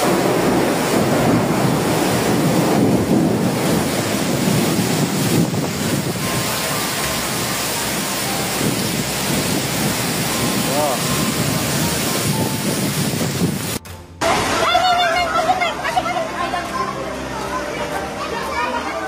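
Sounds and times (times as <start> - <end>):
wind buffeting microphone: 0.0 - 13.8.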